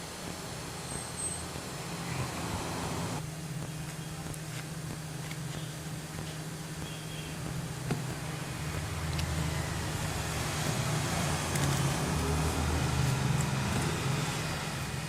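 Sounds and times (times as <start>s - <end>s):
low steady rumble: 0.0s - 15.0s.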